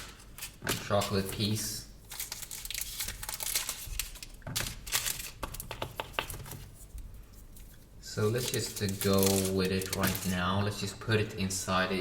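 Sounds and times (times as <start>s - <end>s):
wrappers crinkling: 0.0s - 5.7s, 7.6s - 10.5s.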